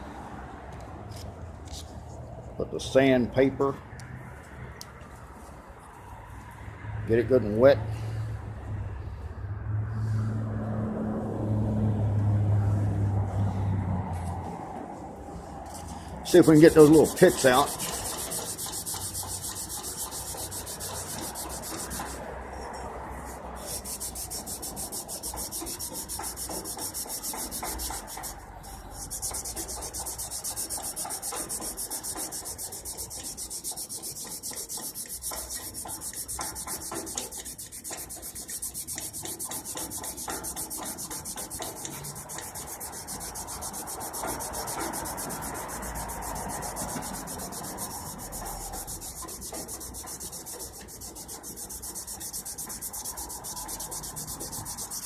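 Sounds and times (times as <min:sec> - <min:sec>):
sandpaper scrubbing metal: 0:15.7 - 0:55.0.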